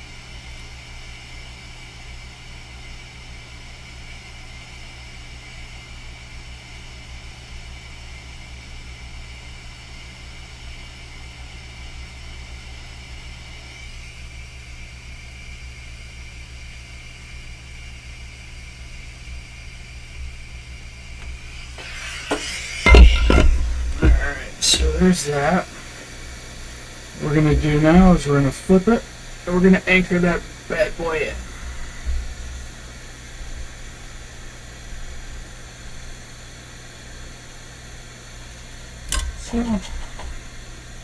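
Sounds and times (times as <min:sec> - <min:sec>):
faint high whine: 0:21.2 - 0:33.6
hot air station blowing: 0:21.2 - 0:41.0.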